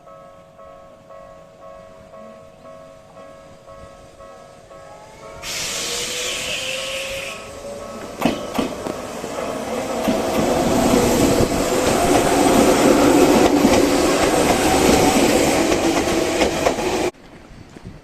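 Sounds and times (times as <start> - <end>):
electric train passing: 0.0 - 17.2
wheels clattering over rail joints: 7.6 - 17.2.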